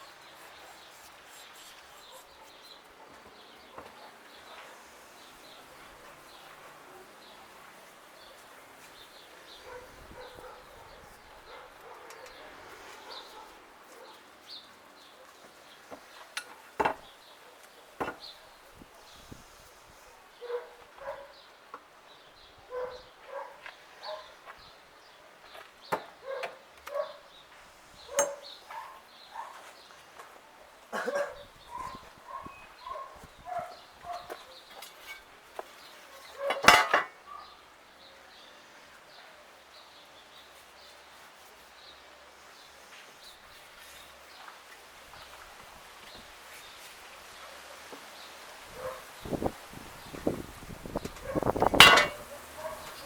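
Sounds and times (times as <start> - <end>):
dog barking: 9.6 - 14.3, 20.4 - 21.4, 22.7 - 24.4, 26.2 - 27.3, 28.1 - 29.7, 31.0 - 34.6, 36.3 - 37.6, 48.7 - 49.1, 51.2 - 53.0
birds chirping: 20.4 - 30.0, 30.9 - 34.9.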